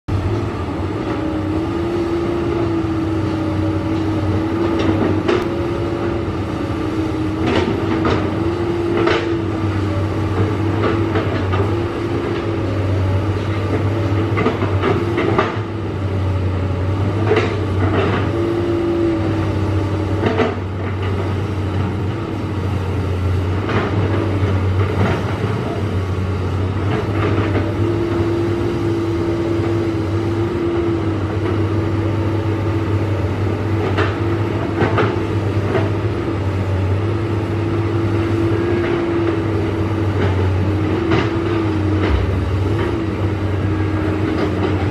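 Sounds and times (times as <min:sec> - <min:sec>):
diesel engine under load: 0:00.1 - 0:44.9
machine knocks and clanks: 0:13.4 - 0:15.8, 0:20.1 - 0:22.2, 0:33.7 - 0:36.3, 0:38.0 - 0:44.9.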